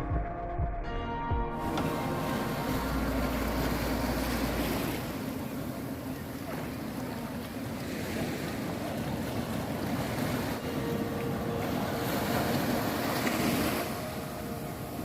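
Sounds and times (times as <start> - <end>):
sea waves washing over rocks: 1.6 - 15.0.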